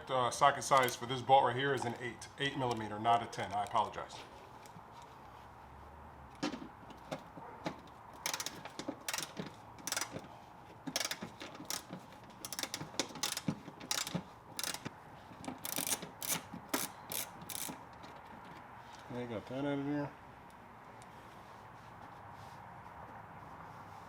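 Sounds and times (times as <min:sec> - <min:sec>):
ratchet wrench clicking: 0:00.7 - 0:01.0, 0:08.2 - 0:10.2, 0:10.9 - 0:14.9, 0:15.5 - 0:18.0.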